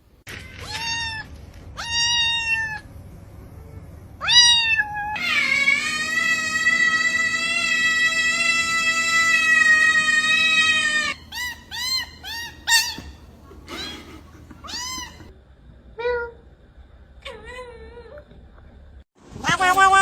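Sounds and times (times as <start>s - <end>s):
cat long high-pitched call: 4.2s - 13.0s.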